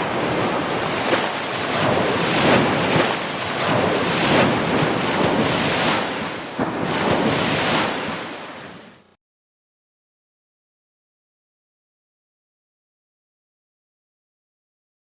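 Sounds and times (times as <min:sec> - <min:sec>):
ocean waves breaking: 0:00.0 - 0:09.1.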